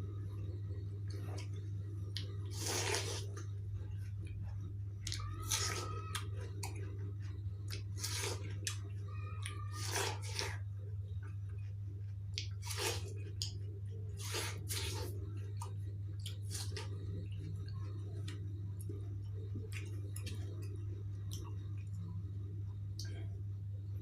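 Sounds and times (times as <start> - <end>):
low hum: 0.0 - 24.0
wet chewing of watermelon: 1.1 - 8.8, 11.2 - 20.6.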